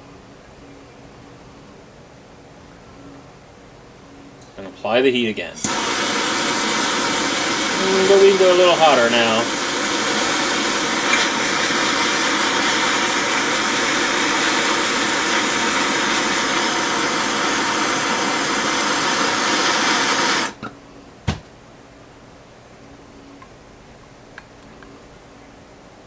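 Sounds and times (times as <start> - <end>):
heat gun blowing: 5.6 - 20.6.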